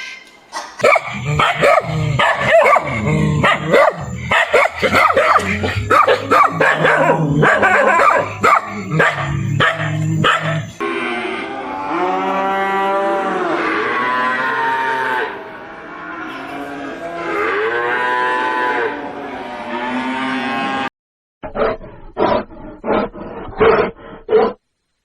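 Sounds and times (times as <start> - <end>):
dogs barking: 0.8 - 10.8
cow mooing: 4.8 - 20.9.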